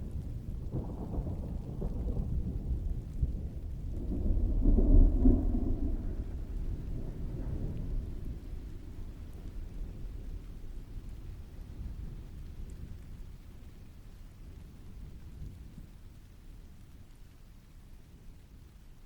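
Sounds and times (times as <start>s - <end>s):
distant rolling thunder: 0.0s - 13.7s
heavy rain: 0.0s - 19.0s.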